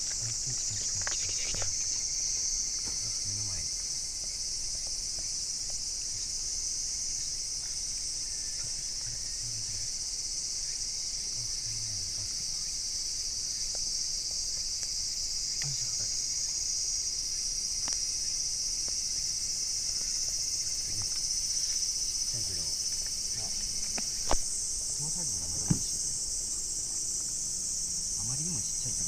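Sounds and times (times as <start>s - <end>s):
insects shrilling: 0.0s - 29.0s
faint low knocks: 23.4s - 26.0s.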